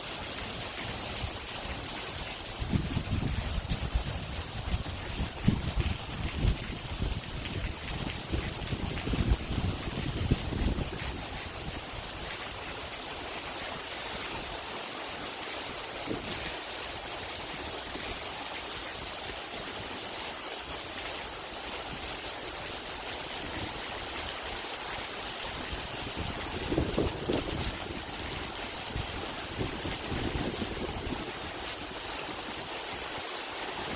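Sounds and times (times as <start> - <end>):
heavy rain pouring: 0.0 - 33.9.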